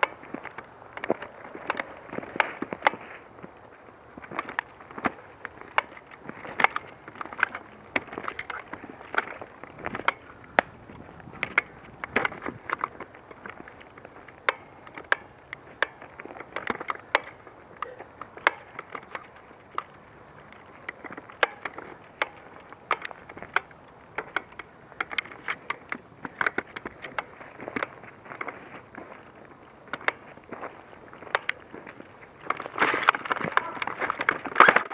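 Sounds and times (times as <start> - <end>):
footsteps crunching on dry ground: 0.0 - 34.9.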